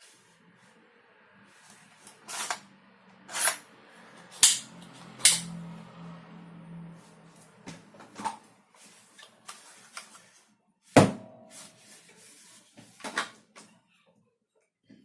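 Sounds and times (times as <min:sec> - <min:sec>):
hard parts clicking: 0:04.4 - 0:05.5.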